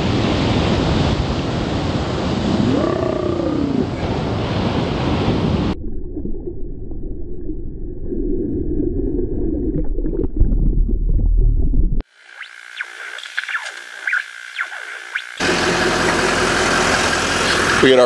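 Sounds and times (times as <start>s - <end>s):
wind rushing over microphone: 0.0s - 5.8s.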